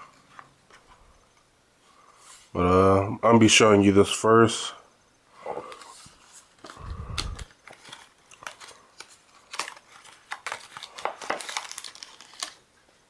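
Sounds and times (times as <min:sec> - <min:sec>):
packaging clicking and crinkling: 0:05.7 - 0:12.6.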